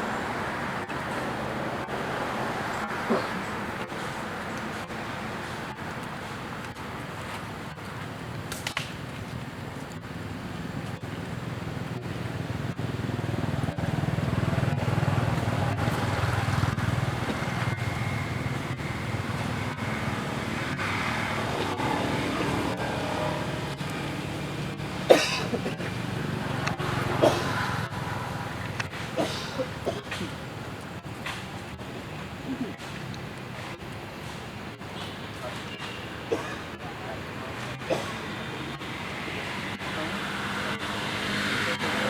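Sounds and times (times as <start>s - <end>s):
motor vehicle low rumble: 7.7s - 29.7s.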